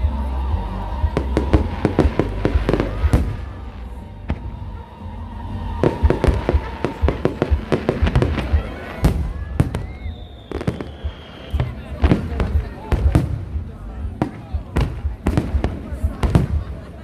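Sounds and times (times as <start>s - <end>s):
fireworks bangs and crackles: 0.0s - 17.0s.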